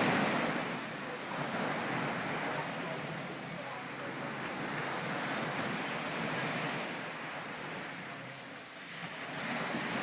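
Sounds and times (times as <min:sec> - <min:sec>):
sea water splashing: 0:00.0 - 0:10.0.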